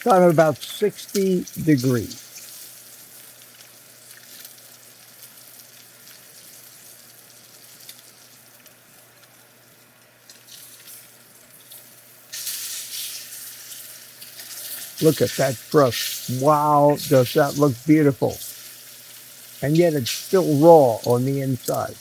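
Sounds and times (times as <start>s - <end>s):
steak sizzling in a pan: 0.0s - 22.0s.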